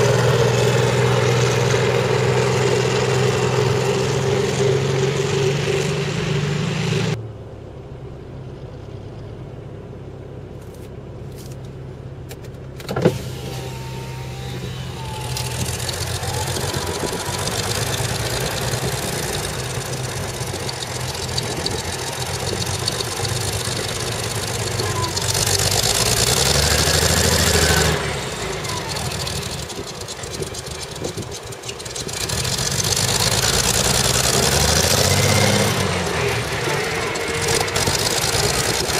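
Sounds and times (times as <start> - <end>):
engine running rough and misfiring: 0.0 - 7.2, 12.2 - 38.9.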